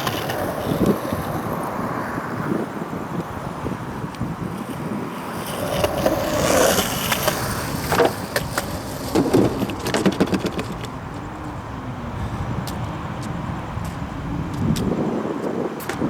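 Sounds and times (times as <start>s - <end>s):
skateboard clacks on concrete: 0.0s - 2.4s, 4.0s - 16.0s
skateboard wheels rolling on concrete: 0.0s - 16.0s.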